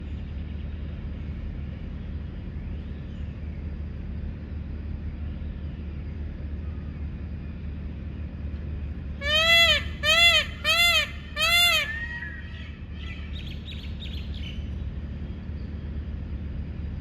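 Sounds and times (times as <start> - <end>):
low outdoor rumble: 0.0 - 17.0
faint high rising and falling calls: 9.2 - 13.5.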